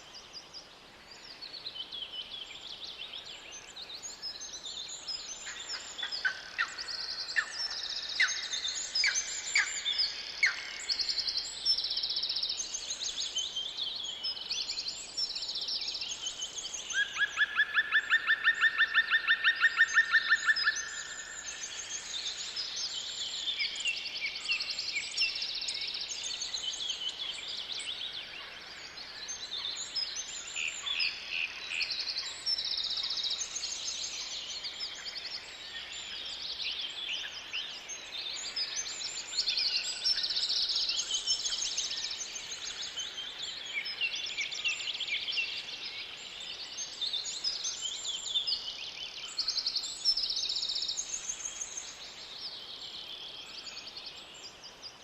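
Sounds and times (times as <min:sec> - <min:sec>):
songbirds singing: 0:00.0 - 0:55.0.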